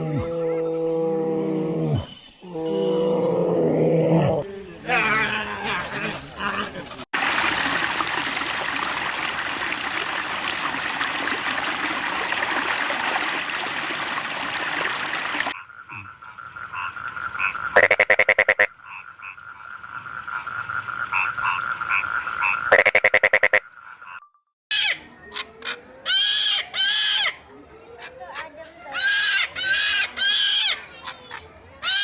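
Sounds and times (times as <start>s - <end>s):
frog chorus: 4.4s - 7.0s, 15.6s - 24.2s
loud frog croaks: 15.6s - 24.2s.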